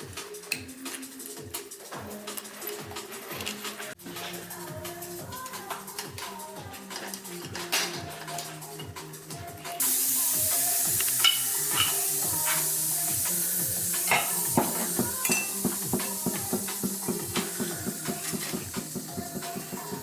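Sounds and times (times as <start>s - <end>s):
background music: 0.0s - 20.0s
hiss: 9.8s - 20.0s.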